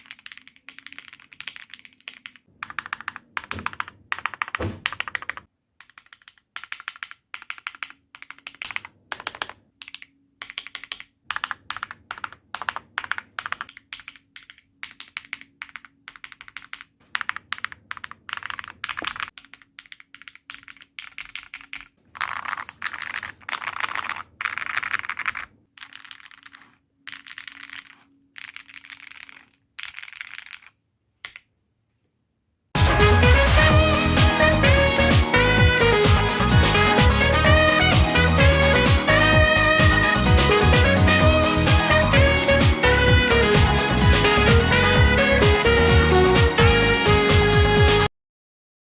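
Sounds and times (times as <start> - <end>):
mechanical keyboard typing: 0.0 - 31.4.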